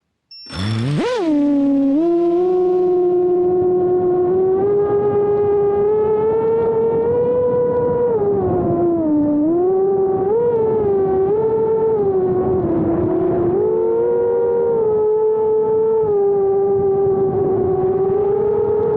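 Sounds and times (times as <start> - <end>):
drone motors whining: 0.3 - 3.7.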